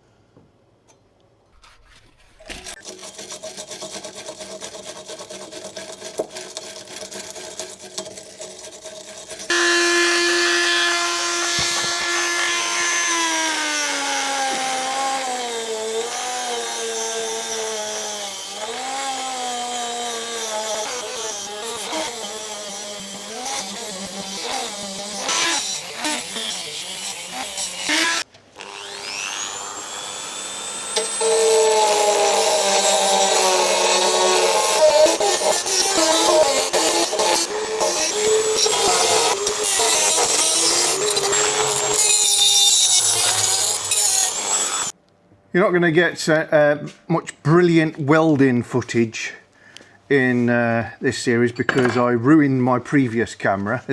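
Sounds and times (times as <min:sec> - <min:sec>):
power tool on metal bodywork: 0:02.4 - 0:45.0.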